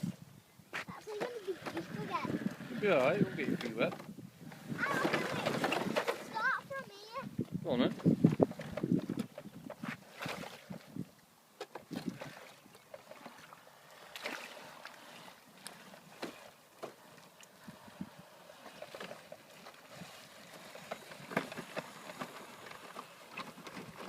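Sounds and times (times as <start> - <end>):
water splashing in puddle: 11.9 - 15.9.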